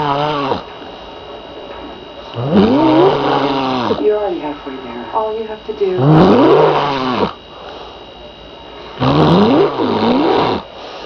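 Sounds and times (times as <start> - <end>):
man snoring heavily: 0.0 - 0.6, 2.4 - 4.1, 6.0 - 7.4, 9.0 - 11.0.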